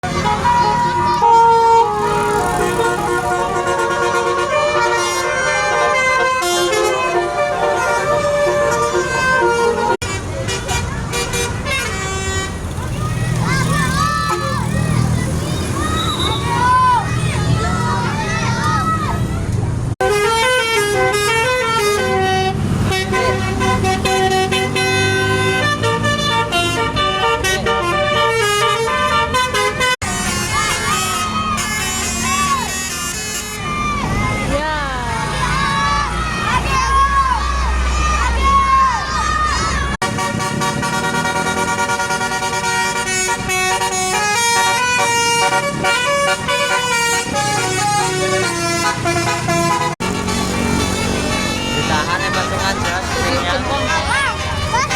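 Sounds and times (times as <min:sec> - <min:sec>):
multi-tone bus air horn tune: 0:00.0 - 0:12.8, 0:20.0 - 0:35.7, 0:40.0 - 0:54.9.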